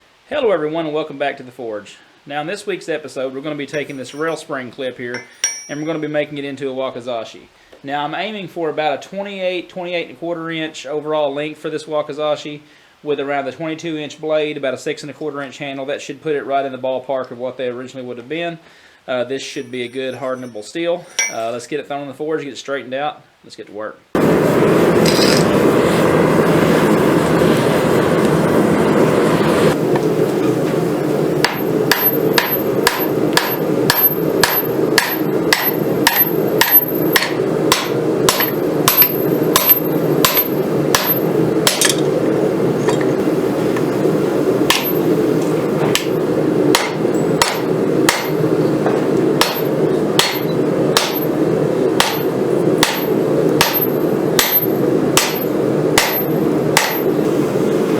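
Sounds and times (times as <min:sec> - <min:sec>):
hammer striking metal on anvil: 0:03.8 - 0:04.4, 0:05.1 - 0:06.2, 0:19.5 - 0:21.6, 0:31.4 - 0:42.1, 0:44.7 - 0:45.1, 0:45.9 - 0:48.4, 0:49.4 - 0:51.3, 0:52.0 - 0:57.1
low roar of forge: 0:24.2 - 0:57.9.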